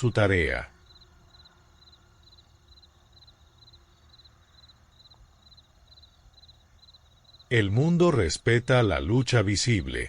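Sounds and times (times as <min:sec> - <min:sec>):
crickets chirping: 0:00.0 - 0:10.0
low background hum: 0:00.0 - 0:10.0.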